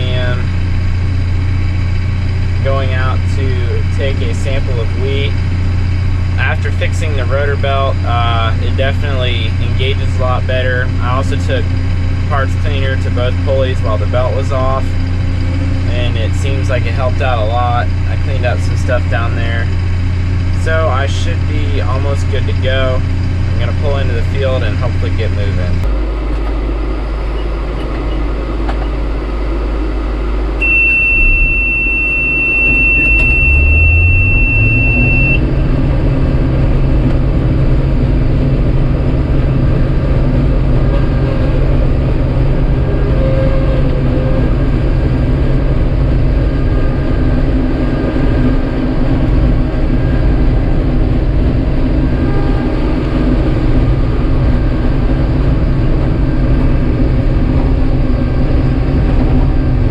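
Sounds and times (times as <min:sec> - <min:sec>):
diesel engine running: 0:00.0 - 0:59.9
high-pitched beep: 0:30.6 - 0:35.5.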